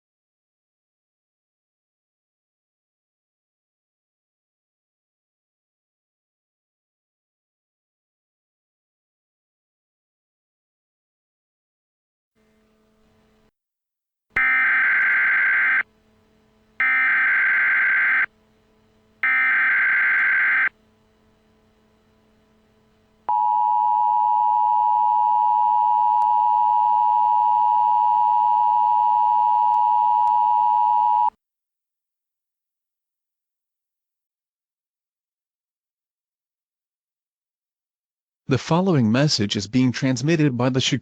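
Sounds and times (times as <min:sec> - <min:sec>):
two-tone attention signal: 0:14.4 - 0:15.9, 0:16.8 - 0:18.4, 0:19.2 - 0:20.8, 0:23.3 - 0:31.3
warbling digital data tones: 0:16.8 - 0:18.3, 0:19.2 - 0:20.7.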